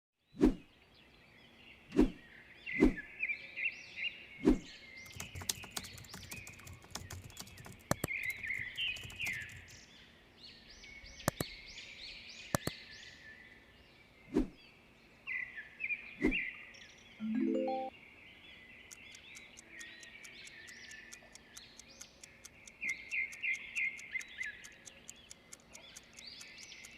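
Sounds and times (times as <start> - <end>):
birds chirping and singing: 1.0 - 14.4, 18.3 - 26.9
sharp clicks: 5.0 - 9.8, 11.2 - 11.6, 12.5 - 12.8, 18.9 - 26.9.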